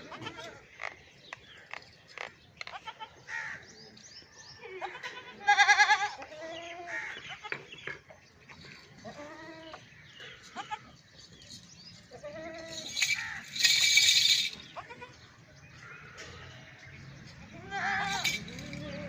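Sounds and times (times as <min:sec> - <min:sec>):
goats bleating: 0:04.8 - 0:07.5, 0:17.5 - 0:19.0.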